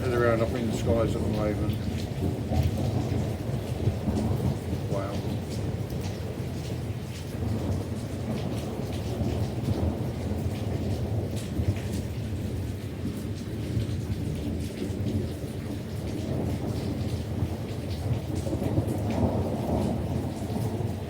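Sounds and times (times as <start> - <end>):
thunder rumbling: 0.0 - 12.6
raindrop ticks: 0.0 - 20.9
falling rain: 0.0 - 21.0.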